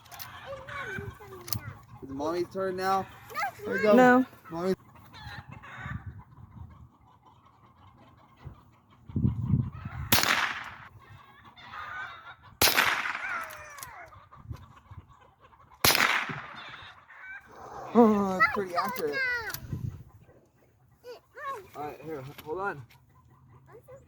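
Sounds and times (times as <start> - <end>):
rifle shots ringing: 10.1 - 10.8, 12.6 - 13.5, 15.8 - 16.6.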